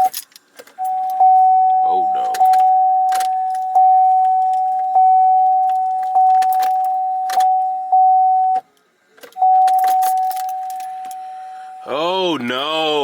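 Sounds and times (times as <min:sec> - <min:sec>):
car warning chime dinging: 0:00.0 - 0:00.2, 0:00.8 - 0:08.6, 0:09.3 - 0:13.0
keys jangling: 0:00.0 - 0:01.2, 0:09.2 - 0:11.2.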